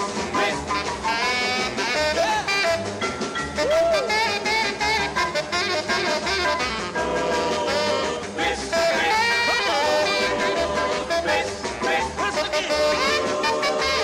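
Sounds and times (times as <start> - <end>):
rock and roll twist song: 0.0 - 14.0
person singing: 7.0 - 14.0.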